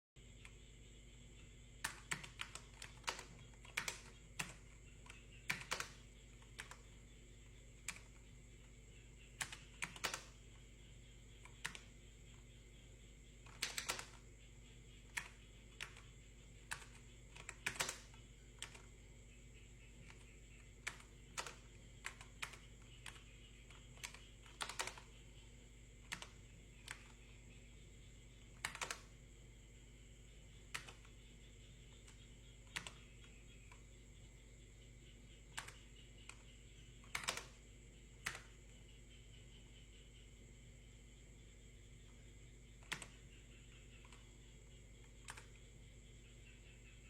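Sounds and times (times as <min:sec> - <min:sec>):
steady low hum: 0:00.0 - 0:47.0
keyboard key clicks: 0:01.8 - 0:06.9, 0:09.4 - 0:10.4, 0:13.5 - 0:14.2, 0:16.7 - 0:18.9, 0:23.8 - 0:25.2, 0:28.6 - 0:29.1, 0:30.7 - 0:31.1, 0:37.0 - 0:37.6, 0:38.2 - 0:38.5, 0:45.2 - 0:45.6.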